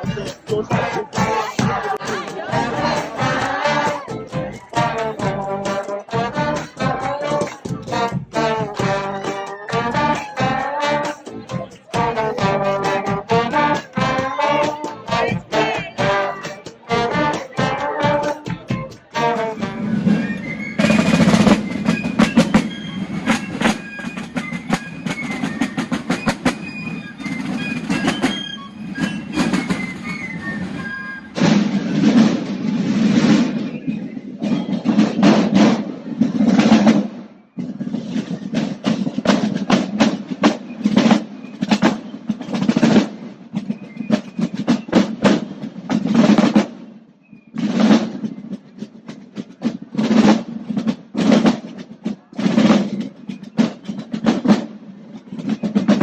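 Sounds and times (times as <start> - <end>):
high piccolo melody: 0.0 - 32.1
marching drums rolls: 0.0 - 56.0.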